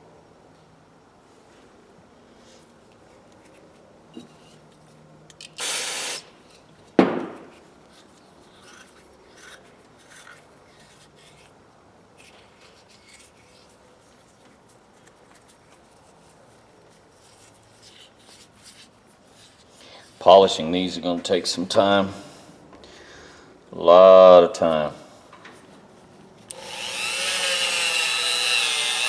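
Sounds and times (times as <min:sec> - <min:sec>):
loud hiss: 0:05.4 - 0:06.4.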